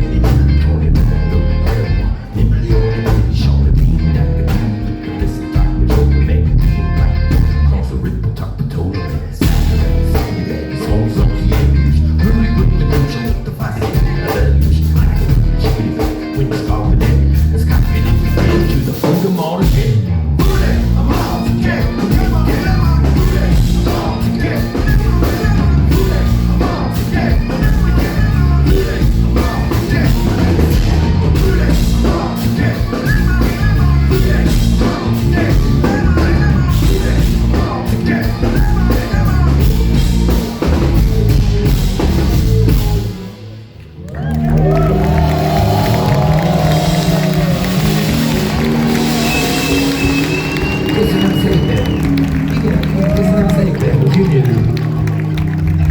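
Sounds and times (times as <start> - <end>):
drum kit: 0.0 - 7.7, 9.3 - 43.9, 44.6 - 55.9
singing: 0.0 - 43.1
guitars: 0.0 - 55.9
rock band playing live: 0.0 - 55.9.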